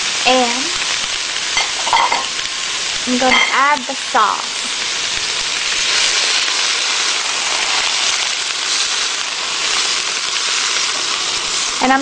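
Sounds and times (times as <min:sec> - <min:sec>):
food sizzling in a wok: 0:00.0 - 0:12.0.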